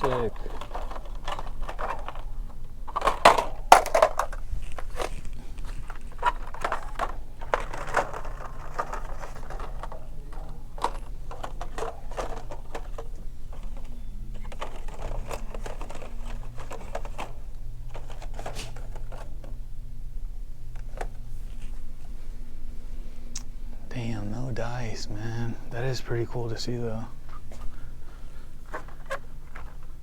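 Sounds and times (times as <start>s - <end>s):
plastic packaged toys clattering: 0.0s - 19.6s, 27.7s - 30.0s
steady low hum: 0.0s - 30.0s.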